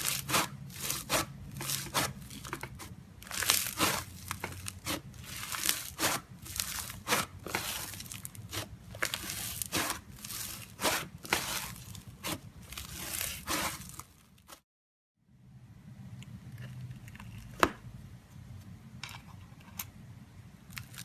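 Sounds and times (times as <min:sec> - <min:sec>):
slime crackling and popping: 0:00.0 - 0:14.6, 0:20.7 - 0:21.0.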